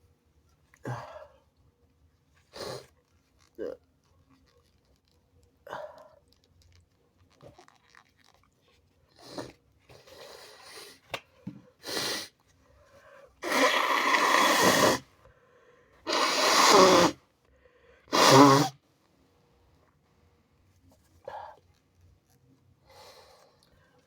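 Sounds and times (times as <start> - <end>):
breaths and sniffs: 2.4 - 3.0, 9.1 - 11.1, 11.7 - 18.8
loud wet sneezes: 13.4 - 15.1, 16.1 - 17.2, 18.1 - 18.8.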